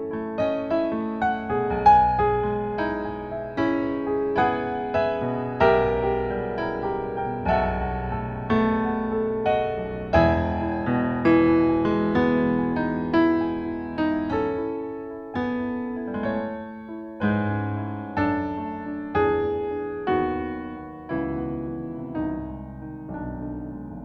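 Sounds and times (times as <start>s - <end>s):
slow solo piano: 0.0s - 24.0s.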